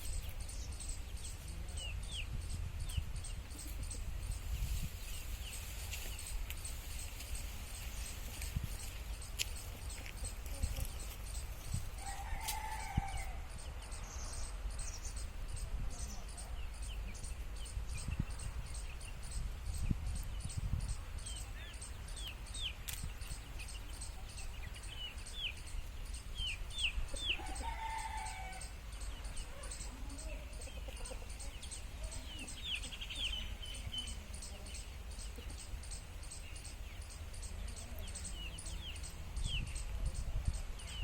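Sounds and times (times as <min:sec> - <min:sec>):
chickens calling: 0:20.5 - 0:41.0.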